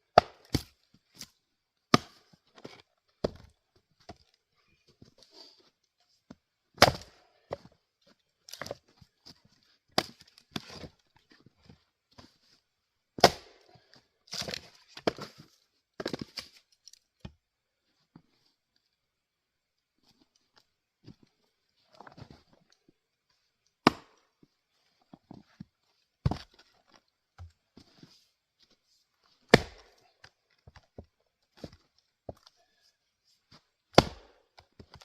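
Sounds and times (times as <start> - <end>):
axe chopping into wood: 0.1 - 0.7, 1.9 - 2.2, 6.8 - 7.2, 13.2 - 13.6, 23.8 - 24.2, 29.5 - 30.0, 33.9 - 34.4.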